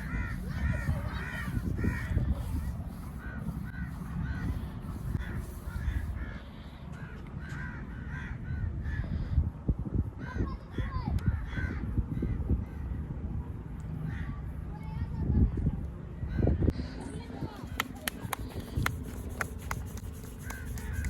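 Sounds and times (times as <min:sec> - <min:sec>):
birds calling: 0:00.0 - 0:09.0
hands thumping and rubbing back: 0:17.8 - 0:21.0.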